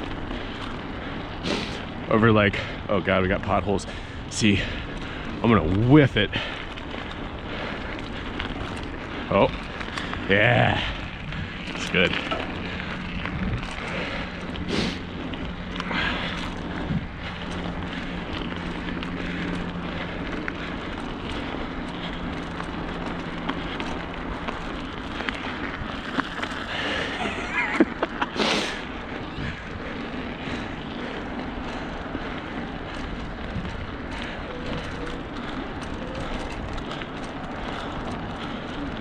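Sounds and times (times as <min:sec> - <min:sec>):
bicycle rolling over rough road: 0:00.0 - 0:39.0
steady low hum: 0:00.0 - 0:39.0
wind on microphone: 0:09.5 - 0:14.8.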